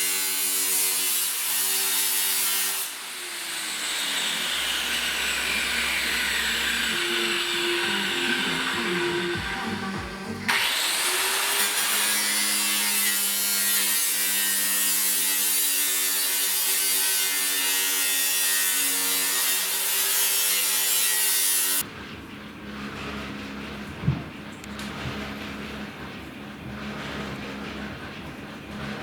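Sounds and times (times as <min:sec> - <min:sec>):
power tool cutting: 0:00.0 - 0:21.8.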